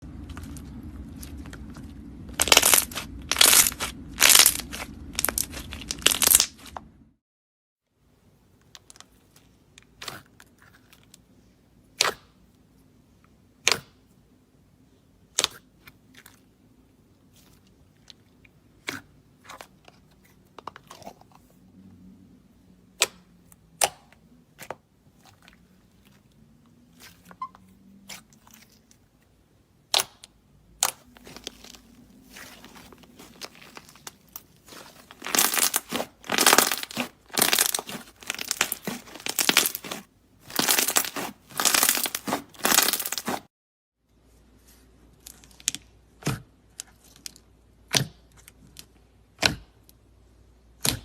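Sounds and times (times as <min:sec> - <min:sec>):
slime squishing: 0:00.0 - 0:06.9, 0:08.7 - 0:11.3, 0:15.2 - 0:21.6, 0:22.9 - 0:43.5.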